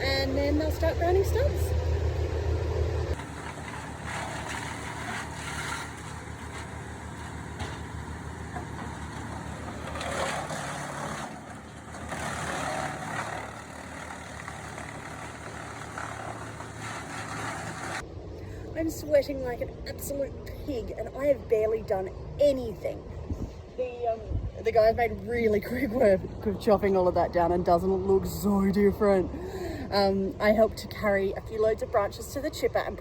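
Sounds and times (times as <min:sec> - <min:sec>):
wood chipper engine running: 0:00.2 - 0:18.0
wood chipper rushing noise: 0:01.8 - 0:18.0.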